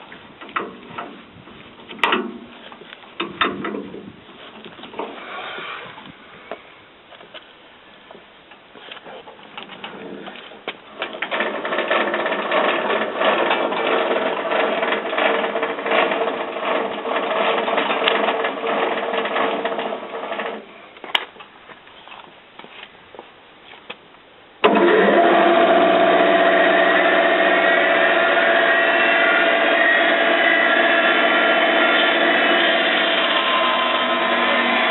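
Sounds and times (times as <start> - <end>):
band sawmill humming: 24.6 - 34.9
machine with rising whine: 24.7 - 34.9.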